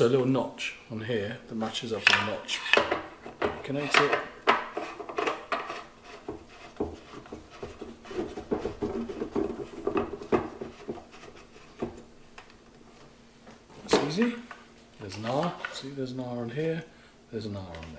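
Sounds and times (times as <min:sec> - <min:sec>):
hard clicks and scraping: 0:02.0 - 0:12.6.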